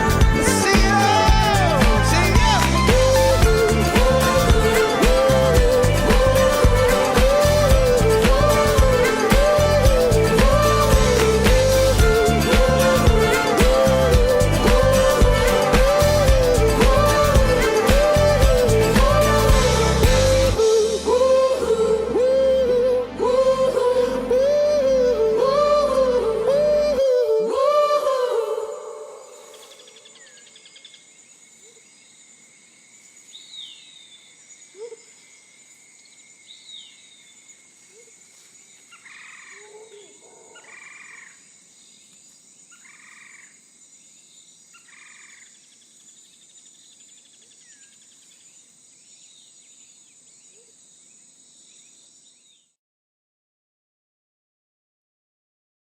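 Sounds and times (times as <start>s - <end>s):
high-pitched insect chorus: 0.0s - 21.9s, 27.0s - 52.6s
pop song singing: 0.0s - 29.6s.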